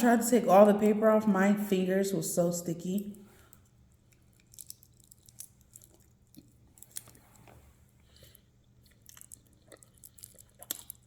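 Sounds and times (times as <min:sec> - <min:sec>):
low steady hum: 0:00.0 - 0:11.0
chewing candy: 0:03.4 - 0:11.0.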